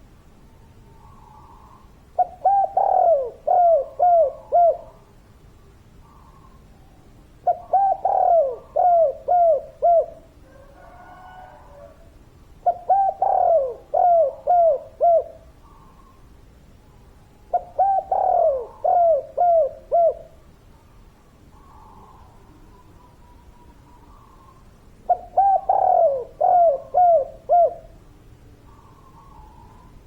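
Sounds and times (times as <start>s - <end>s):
dove cooing: 1.0s - 5.1s, 7.4s - 16.3s, 17.5s - 20.4s, 21.5s - 28.0s.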